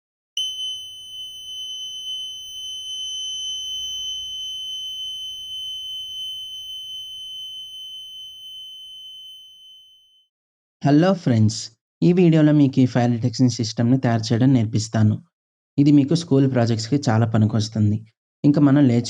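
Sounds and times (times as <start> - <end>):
buzzer high-pitched tone: 0.4 - 10.2.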